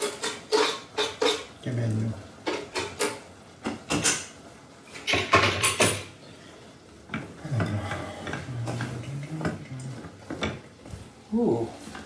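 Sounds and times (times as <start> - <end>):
utensils clattering on cookware: 0.0 - 1.6, 2.4 - 6.2.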